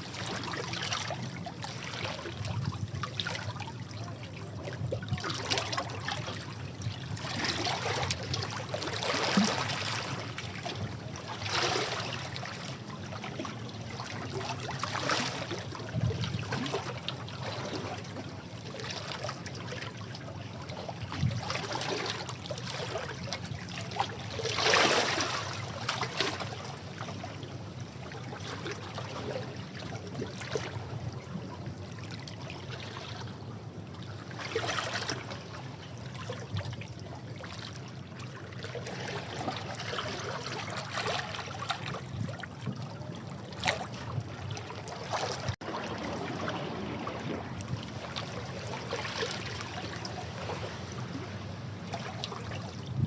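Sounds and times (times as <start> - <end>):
sea waves breaking on rocks: 24.5 - 26.3, 43.6 - 53.0.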